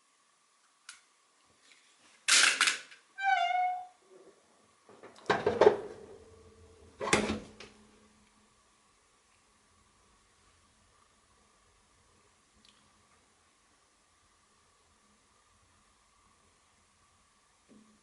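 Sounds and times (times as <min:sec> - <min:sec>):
short squeak: 0:03.2 - 0:04.0
faint steady whine: 0:05.9 - 0:18.0.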